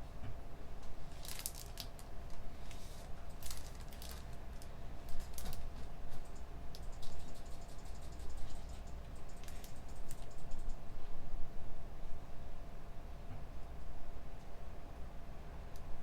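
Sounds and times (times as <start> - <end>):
steady low hum: 0.0 - 16.0
keyboard typing: 5.1 - 10.8.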